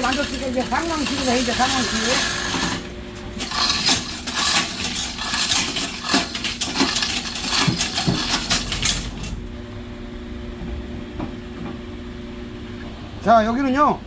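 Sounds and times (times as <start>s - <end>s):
steel parts clanking together: 0.0s - 9.4s.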